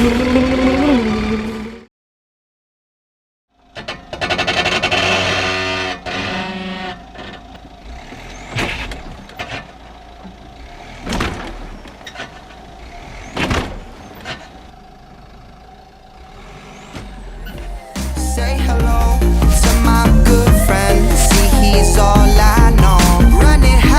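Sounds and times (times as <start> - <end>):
motorcycle engine running: 17.2 - 23.9.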